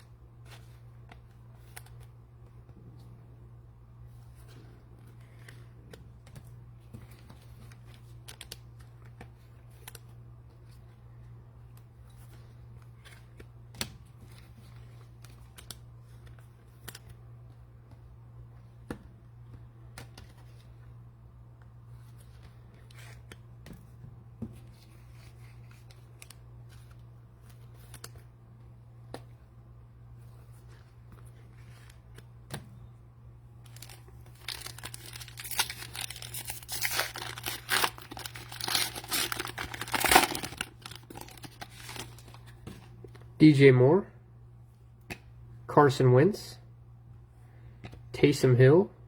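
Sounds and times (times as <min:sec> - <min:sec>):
low electrical hum: 0:00.0 - 0:49.0
cards and plastic wrappers rustling: 0:30.1 - 0:32.6, 0:33.6 - 0:43.2.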